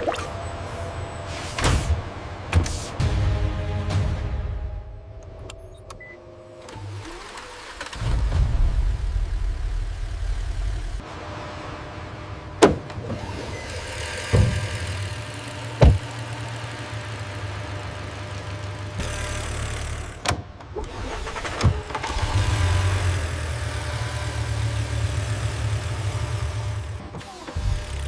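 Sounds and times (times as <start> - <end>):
sharp knocks: 15.8 - 16.0.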